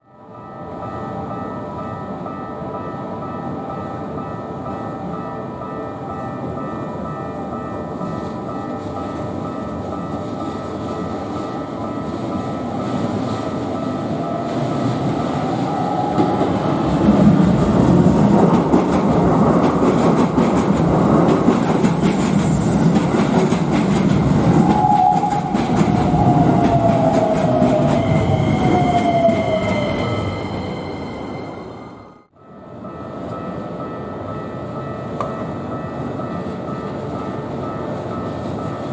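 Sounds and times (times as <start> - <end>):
train wheels rumbling and clattering: 8.1 - 31.3
level crossing alarm ringing: 24.6 - 32.1.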